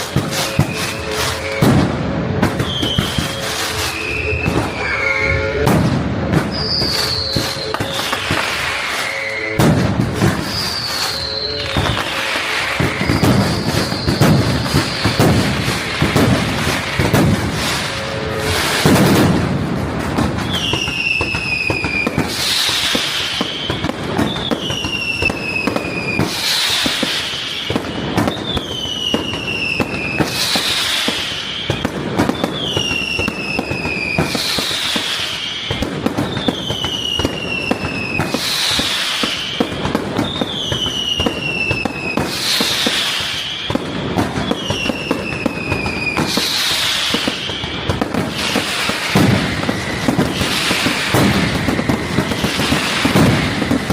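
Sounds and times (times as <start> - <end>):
high falling whistle: 0.0 - 19.4, 20.3 - 53.9
fireworks bangs and crackling: 0.0 - 53.9
music: 0.6 - 13.7.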